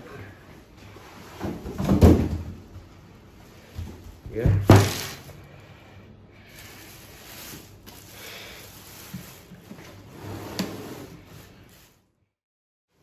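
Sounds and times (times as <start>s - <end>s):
packaging rustling: 6.5s - 10.1s.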